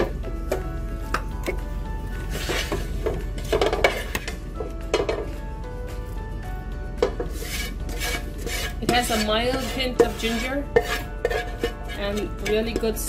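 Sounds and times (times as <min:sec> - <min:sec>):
soft background music: 0:00.0 - 0:13.0
metal spoon scraping a pan: 0:02.2 - 0:04.4, 0:07.0 - 0:13.0.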